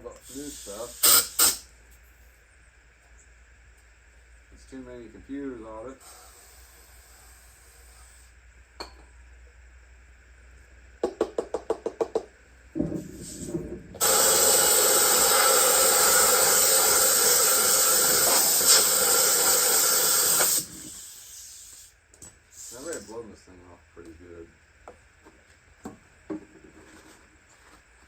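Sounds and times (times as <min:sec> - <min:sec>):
loud spray hiss: 0:00.2 - 0:01.7, 0:06.0 - 0:08.3, 0:13.0 - 0:23.2.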